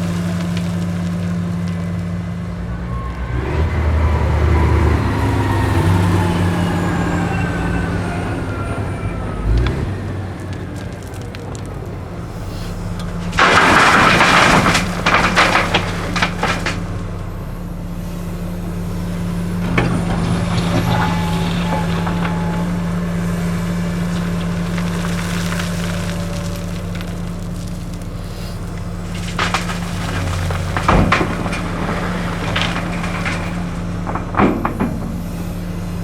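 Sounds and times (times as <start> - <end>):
excavator diesel engine: 0.0 - 36.0
gravel clatter: 0.0 - 36.0
gravel pouring into truck bed: 10.4 - 36.0
hydraulic whine: 12.2 - 36.0.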